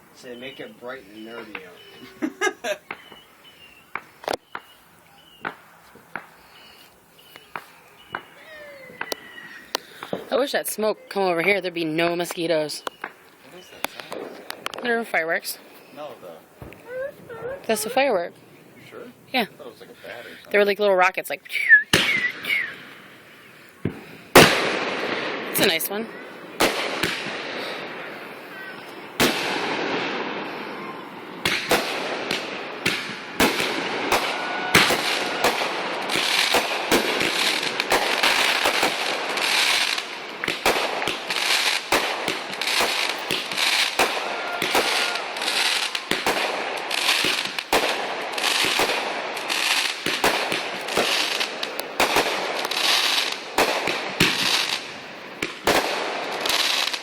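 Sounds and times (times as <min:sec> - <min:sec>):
firework pops and crackles: 0:02.8 - 0:03.2, 0:03.9 - 0:06.4, 0:07.3 - 0:10.4, 0:11.4 - 0:15.1, 0:16.0 - 0:18.5, 0:21.9 - 0:23.0, 0:23.7 - 0:28.0, 0:28.9 - 0:57.0
firework bangs: 0:07.5 - 0:18.8, 0:21.9 - 0:57.0
firework hiss: 0:26.4 - 0:57.0.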